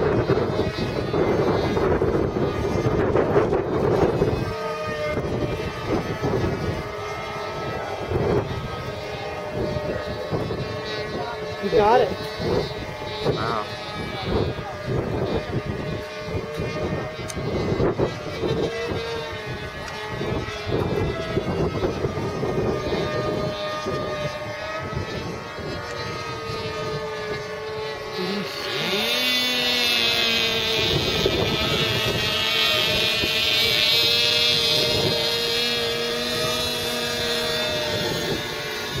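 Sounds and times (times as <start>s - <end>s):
loud high whine: 0.0s - 39.0s
model airplane motors buzzing: 0.0s - 39.0s.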